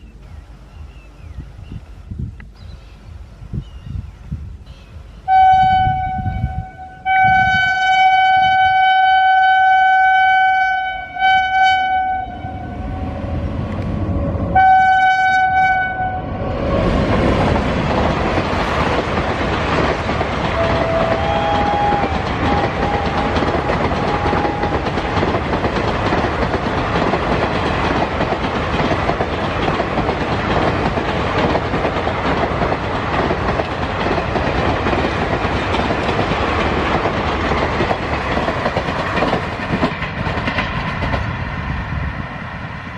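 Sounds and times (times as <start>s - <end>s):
locomotive horn blasts: 5.3s - 13.4s, 14.5s - 16.4s, 20.5s - 25.2s
train wheels clattering on bridge: 16.9s - 41.5s.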